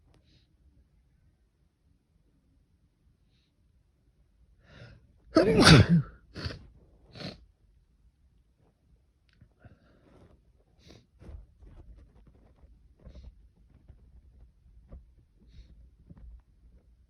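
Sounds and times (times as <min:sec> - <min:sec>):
person sneezing: 0:05.4 - 0:06.6.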